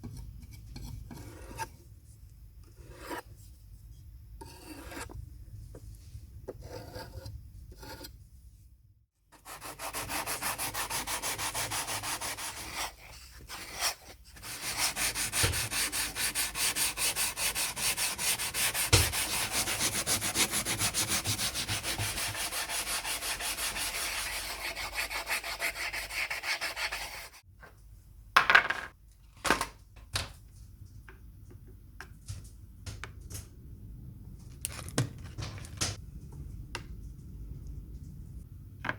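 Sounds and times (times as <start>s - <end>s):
hand sanding strokes: 9.4s - 27.4s.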